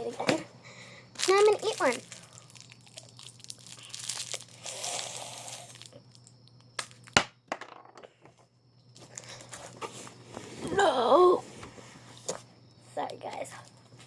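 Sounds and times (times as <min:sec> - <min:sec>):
plastic bag crinkling: 0:01.2 - 0:06.3.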